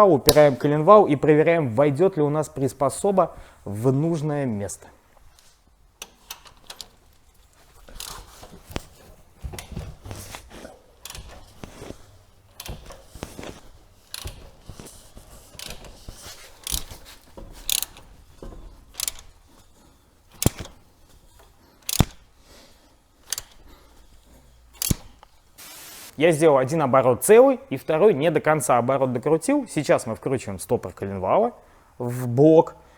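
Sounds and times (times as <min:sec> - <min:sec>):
metal clanks: 0:06.0 - 0:22.3
wrench ratcheting clicks: 0:07.9 - 0:08.3, 0:11.0 - 0:11.9, 0:12.5 - 0:14.5, 0:16.6 - 0:18.1, 0:18.9 - 0:19.4, 0:20.3 - 0:20.8, 0:21.8 - 0:22.3, 0:23.2 - 0:23.7, 0:24.8 - 0:25.3.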